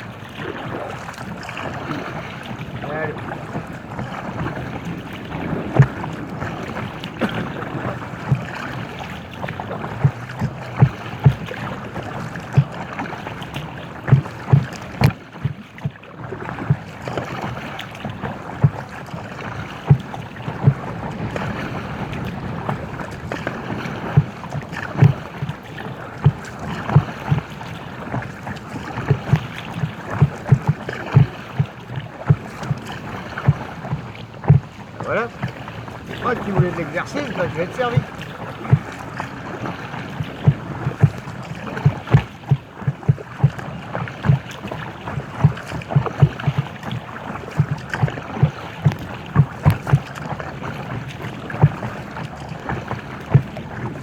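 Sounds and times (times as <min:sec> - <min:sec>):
wind noise: 0:00.0 - 0:15.6, 0:16.3 - 0:54.0
paddle strokes in water: 0:00.0 - 0:54.0
water washing: 0:00.0 - 0:54.0
dull knocks: 0:09.8 - 0:11.5, 0:19.5 - 0:21.7, 0:29.0 - 0:39.0, 0:40.3 - 0:44.6, 0:47.6 - 0:50.2, 0:51.6 - 0:51.9, 0:53.3 - 0:53.7.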